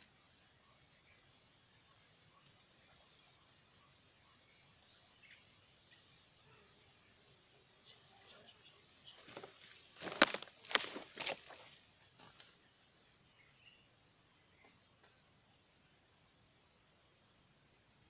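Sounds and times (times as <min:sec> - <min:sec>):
insects chirring: 0:00.0 - 0:18.0
rustling in dry vegetation: 0:09.0 - 0:12.6.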